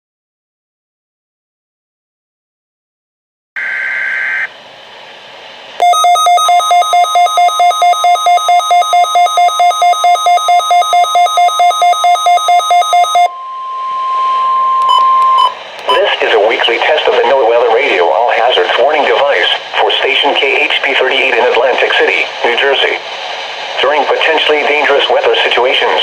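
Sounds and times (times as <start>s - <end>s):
alert beeping: 5.8s - 15.6s
digital data tones screech: 5.8s - 15.6s
steady warning alarm tone: 5.8s - 16.0s.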